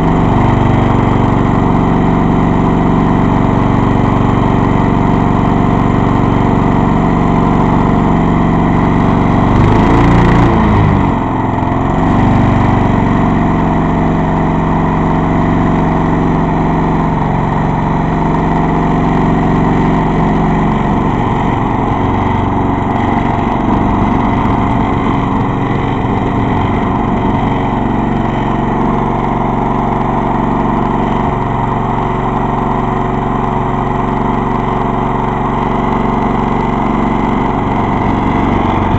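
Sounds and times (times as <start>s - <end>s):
lawn mower engine running: 0.0s - 38.9s.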